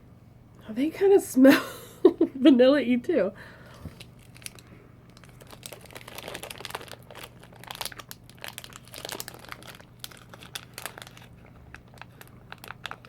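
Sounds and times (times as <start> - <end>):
plastic packaging crinkling: 3.9 - 13.0.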